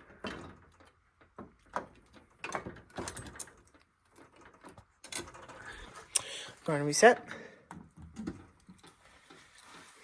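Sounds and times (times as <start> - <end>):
mechanism clicks and knocks: 0.0 - 5.9.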